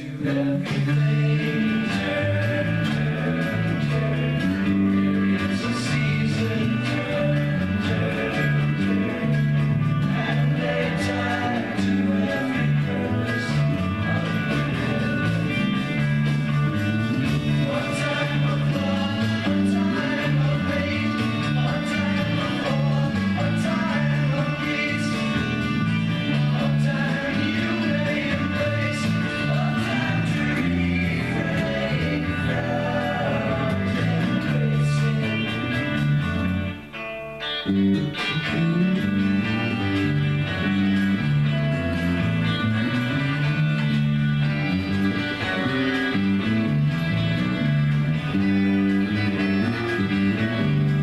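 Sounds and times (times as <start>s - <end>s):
person singing: 0.0s - 36.6s
guitar: 0.0s - 51.0s
rock song: 0.0s - 51.0s.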